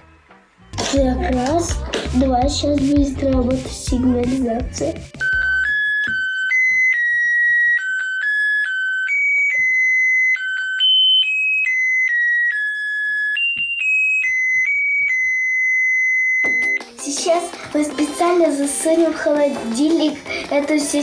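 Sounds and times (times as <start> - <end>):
electronic beeping melody: 5.2 - 17.0.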